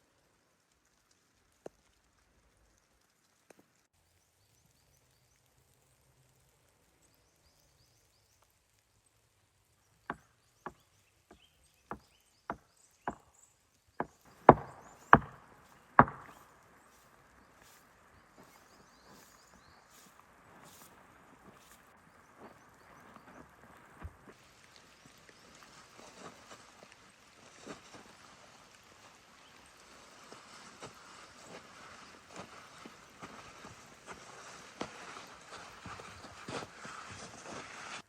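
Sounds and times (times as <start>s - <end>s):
axe chopping wood: 14.0s - 16.4s
faint rustling: 14.0s - 29.0s, 29.6s - 38.0s.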